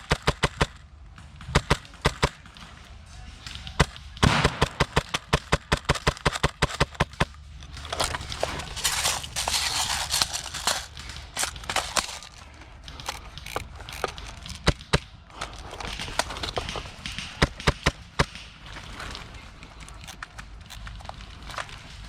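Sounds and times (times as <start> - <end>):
low outdoor background: 0.0 - 22.0
airsoft gun sharp cracks: 3.8 - 7.3.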